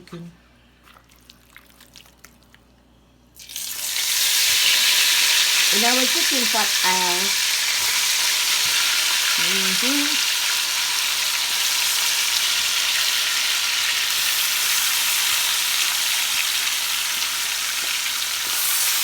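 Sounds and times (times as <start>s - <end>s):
chicken frying in fat: 3.4s - 19.0s.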